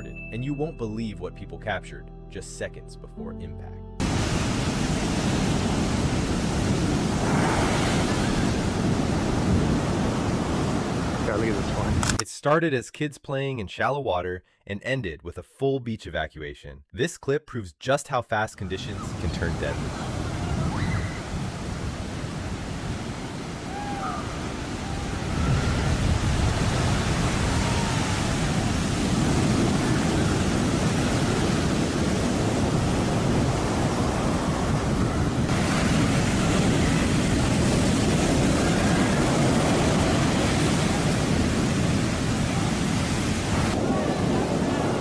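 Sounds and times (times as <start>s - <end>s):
ocean surf breaking on beach: 4.0s - 12.0s, 19.2s - 45.0s.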